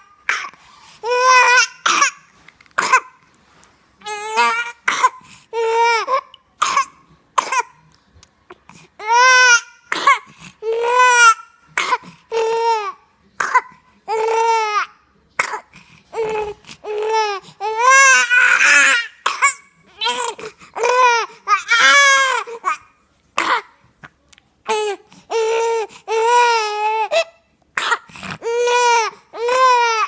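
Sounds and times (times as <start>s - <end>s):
high-pitched coughing: 6.6s - 7.8s, 23.4s - 23.8s.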